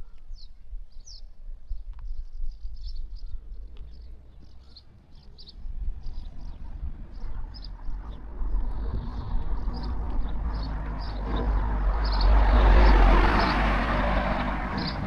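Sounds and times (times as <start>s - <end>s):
small birds chirping: 0.0s - 15.0s
vehicle passing by: 5.1s - 15.0s.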